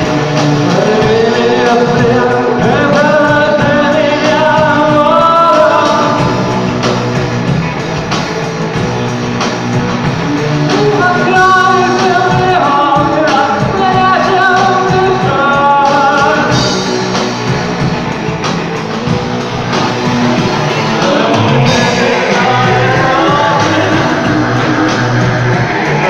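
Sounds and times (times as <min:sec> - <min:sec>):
person singing: 0:00.0 - 0:06.6, 0:10.3 - 0:17.0, 0:20.4 - 0:26.0
loud electric guitars: 0:00.0 - 0:26.0.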